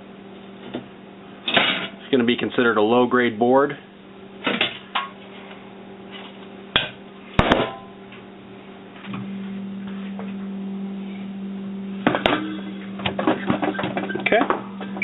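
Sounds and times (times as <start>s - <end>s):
steady low hum: 0.0s - 15.0s
knocks and clatter of parts: 12.1s - 15.0s.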